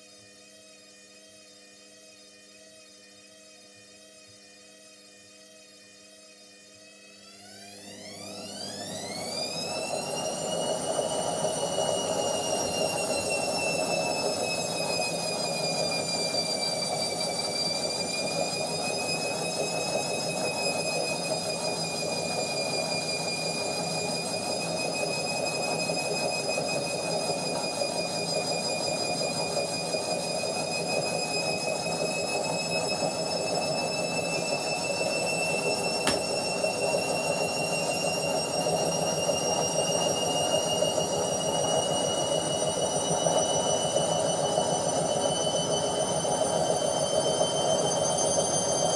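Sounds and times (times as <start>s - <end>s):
washing machine spinning: 7.4s - 48.9s
single click: 36.1s - 36.4s.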